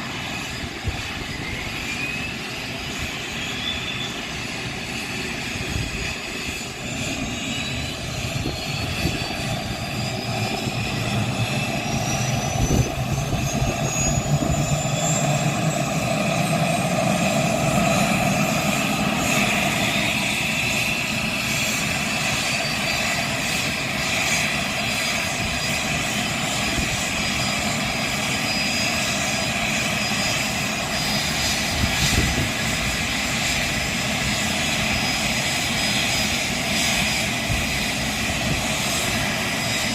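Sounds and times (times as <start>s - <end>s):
jet engines spooling up: 0.0s - 39.9s.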